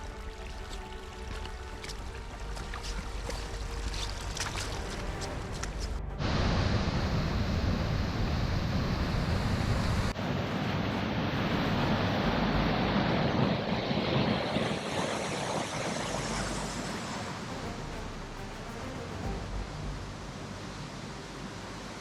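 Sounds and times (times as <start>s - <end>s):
wind rumbling on microphone: 0.0s - 18.5s
waterfall roaring: 3.6s - 22.0s.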